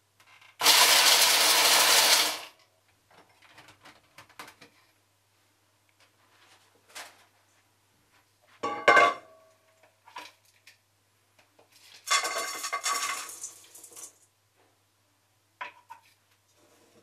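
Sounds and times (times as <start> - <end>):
rustling and scraping: 6.0 - 8.7, 11.6 - 13.4
dishes clattering: 8.6 - 9.4, 12.1 - 13.4.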